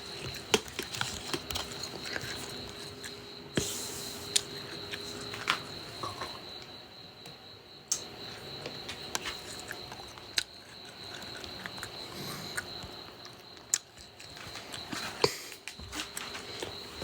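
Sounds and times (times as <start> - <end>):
pig chewing and crunching: 0.0 - 3.3, 8.2 - 17.0
steady high-pitched whine: 0.0 - 17.0.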